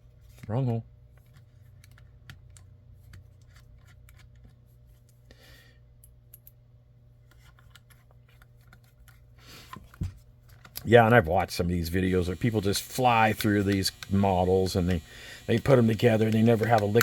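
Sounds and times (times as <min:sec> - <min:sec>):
steady low hum: 0:00.0 - 0:17.0
faint screwdriver clicks: 0:13.2 - 0:17.0.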